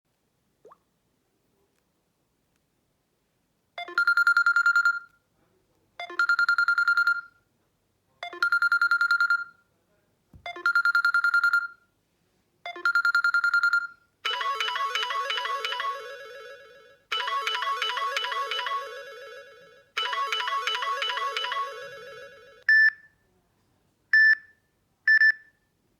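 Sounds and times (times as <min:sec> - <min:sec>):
melodic ringtone: 0:12.7 - 0:22.6
trilling electronic phone ring: 0:12.9 - 0:22.6.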